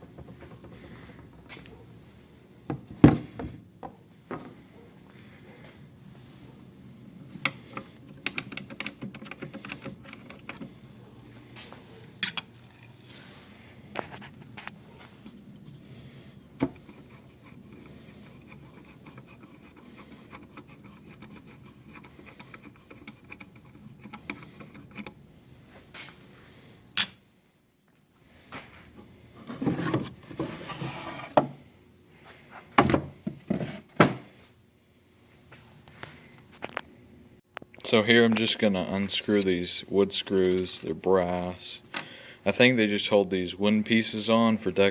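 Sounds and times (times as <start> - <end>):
rubbing and scraping: 29.4 - 31.4
knocks and thuds on workbench: 32.8 - 34.2.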